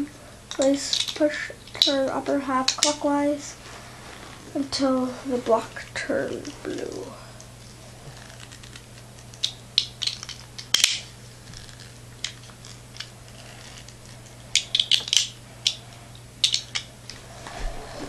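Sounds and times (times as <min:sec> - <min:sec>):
plastic spinning top parts clicking: 0:00.5 - 0:02.0, 0:08.2 - 0:15.8, 0:16.4 - 0:16.9.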